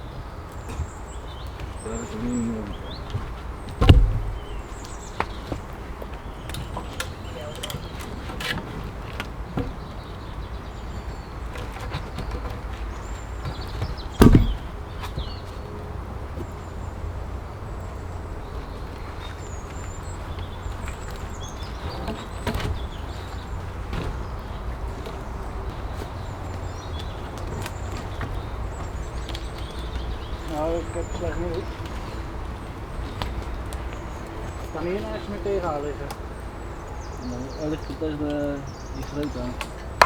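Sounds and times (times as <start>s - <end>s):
birds chirping: 0.0s - 40.0s
knocks: 3.1s - 5.3s, 13.4s - 15.3s
loud thud: 3.8s - 4.6s, 14.2s - 14.8s.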